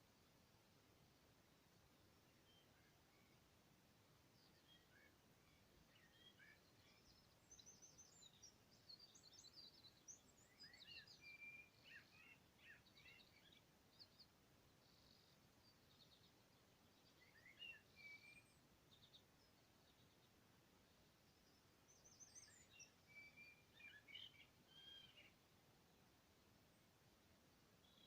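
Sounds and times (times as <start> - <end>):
low steady hiss: 0.0 - 28.0
small birds chirping and trilling: 4.3 - 26.0, 27.8 - 28.0.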